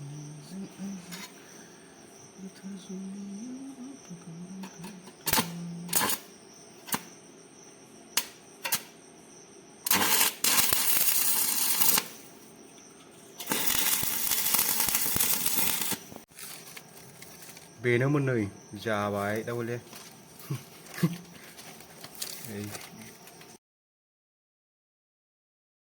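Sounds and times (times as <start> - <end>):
arc welding crackling: 4.6 - 7.1, 8.2 - 9.0, 9.8 - 12.4, 13.4 - 17.8, 19.4 - 23.6.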